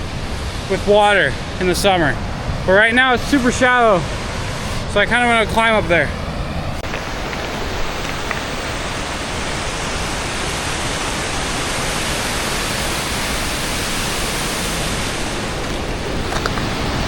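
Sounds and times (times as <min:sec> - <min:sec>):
waterfall falling onto rocks: 0:06.8 - 0:17.0.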